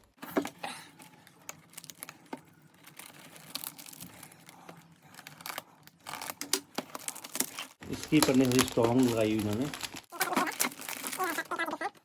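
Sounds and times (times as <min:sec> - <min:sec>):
plastic wrapping tearing and crinkling: 0:00.2 - 0:12.0.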